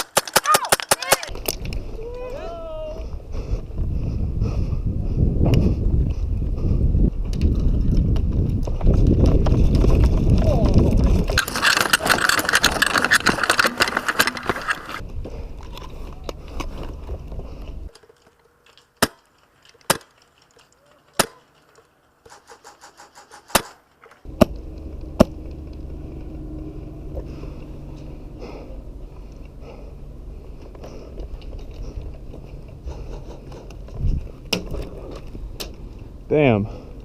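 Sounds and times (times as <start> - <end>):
rustling movement: 8.8 - 36.2.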